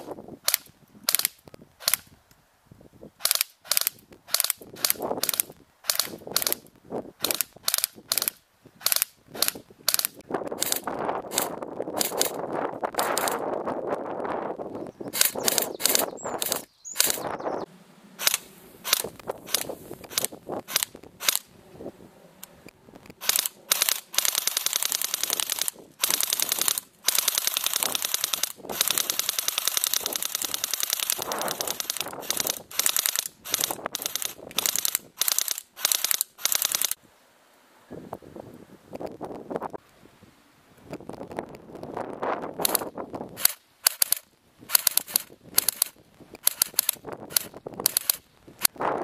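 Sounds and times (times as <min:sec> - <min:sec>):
airsoft gun full-auto bursts: 0:00.4 - 0:02.1, 0:03.2 - 0:06.6, 0:07.2 - 0:12.4, 0:15.1 - 0:17.2, 0:18.2 - 0:21.5, 0:23.2 - 0:37.0, 0:43.4 - 0:48.2.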